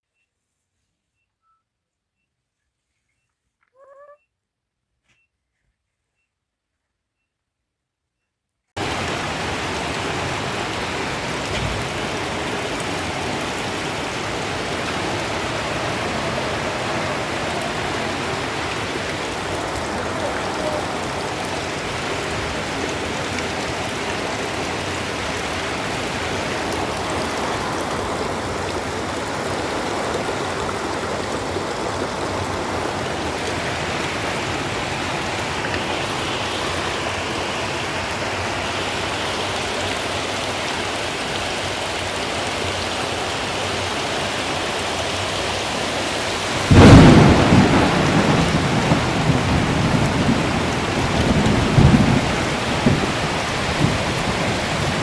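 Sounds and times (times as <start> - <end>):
thunder clap and rumble: 8.8 - 35.7, 46.6 - 55.0
heavy rain downpour: 8.8 - 55.0.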